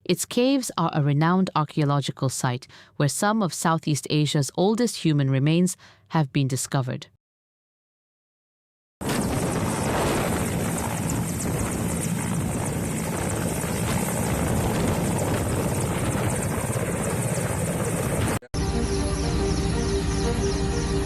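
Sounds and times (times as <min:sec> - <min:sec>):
helicopter rotor chopping: 0:09.0 - 0:21.0
music: 0:18.5 - 0:21.0.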